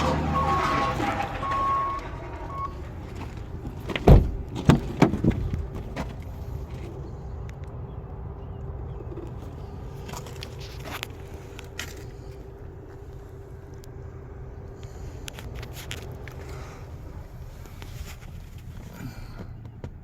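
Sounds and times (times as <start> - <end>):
loud clunks: 0.0 - 6.2
car electronic chime beeping: 0.2 - 2.8.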